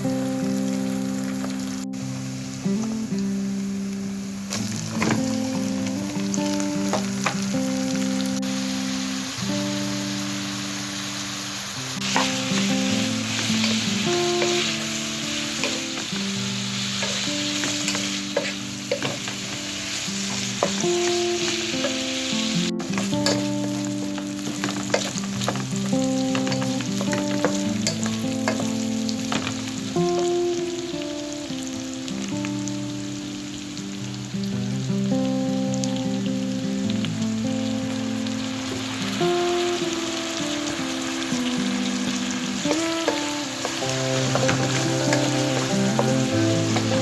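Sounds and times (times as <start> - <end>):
food sizzling in a pan: 0.0 - 47.0
background music: 4.6 - 33.7, 36.4 - 47.0.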